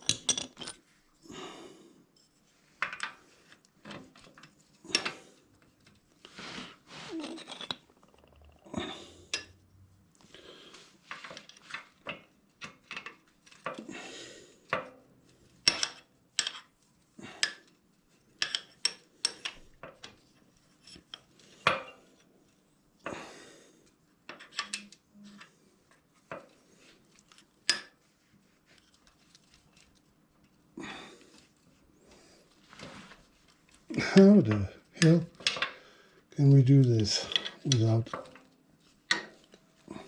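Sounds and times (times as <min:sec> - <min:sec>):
metal parts clinking and knocking: 0:00.0 - 0:00.9, 0:07.2 - 0:08.6.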